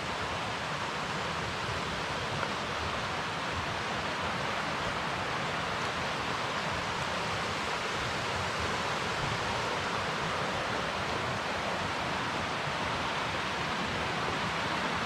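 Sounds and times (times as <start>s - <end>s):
creek rushing over waterfalls: 0.0s - 15.0s.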